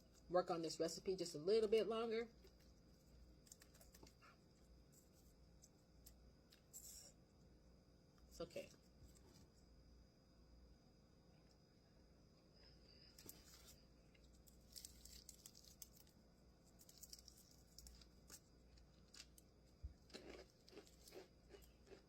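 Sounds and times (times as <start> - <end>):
crunching fried chicken: 2.3 - 7.1, 13.2 - 22.0.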